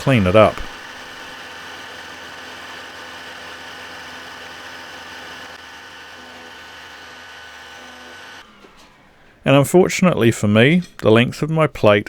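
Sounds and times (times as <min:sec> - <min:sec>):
milling machine whirring: 0:00.0 - 0:08.7.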